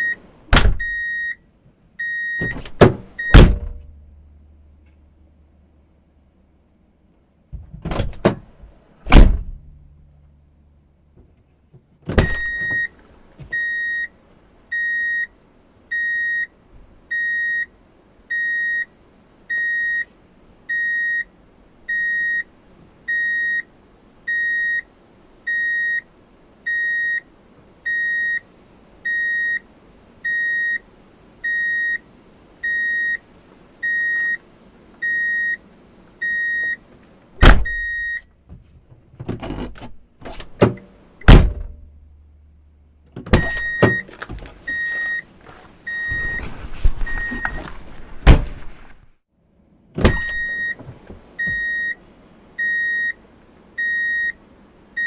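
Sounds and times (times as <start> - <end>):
loud thump: 0.5 - 0.8, 2.4 - 4.0, 9.1 - 9.8, 12.1 - 12.8, 37.4 - 37.9, 40.3 - 41.9, 46.1 - 49.0
reverse warning beeper: 24.3 - 24.9, 26.7 - 27.2, 31.4 - 32.0, 32.6 - 33.2, 33.8 - 34.4, 35.0 - 35.6, 36.2 - 36.8, 44.7 - 45.3, 45.9 - 46.4, 51.4 - 52.0, 53.8 - 54.4.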